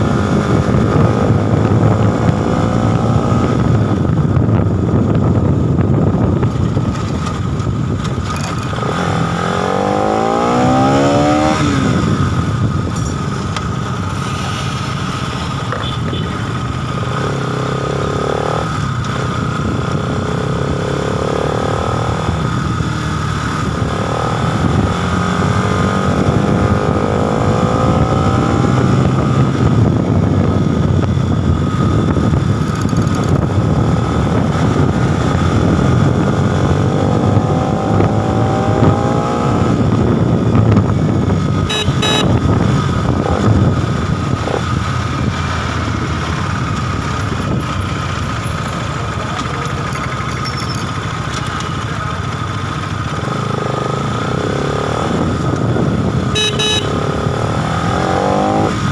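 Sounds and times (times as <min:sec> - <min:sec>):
motorcycle engine accelerating: 0:00.0 - 0:58.9.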